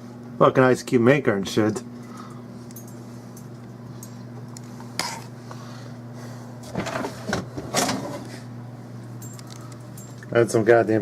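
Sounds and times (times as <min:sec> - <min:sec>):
steady low hum: 0:00.0 - 0:11.0
freezer drawer clunks: 0:06.7 - 0:08.3.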